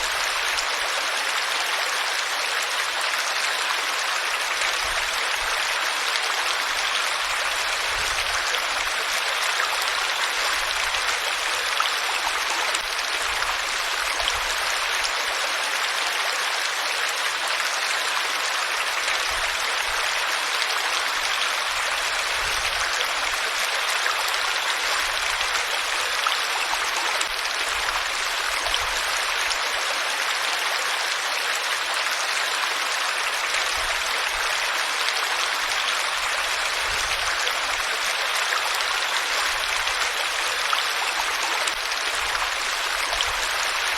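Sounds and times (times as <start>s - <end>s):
stream water rushing: 0.0s - 43.9s.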